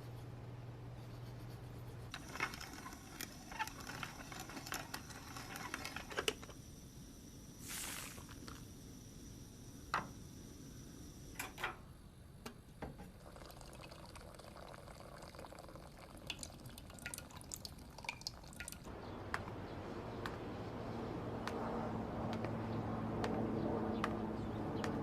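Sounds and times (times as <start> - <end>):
faint drips: 13.2 - 18.9.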